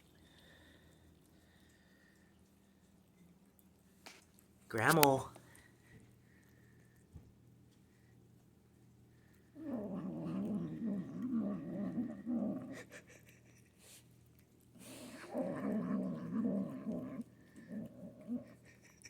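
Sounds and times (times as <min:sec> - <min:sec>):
kitten growling while eating: 0:09.2 - 0:19.0.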